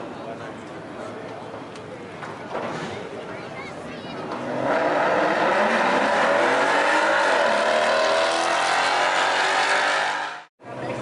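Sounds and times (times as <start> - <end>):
car engine at full throttle: 4.4 - 10.5.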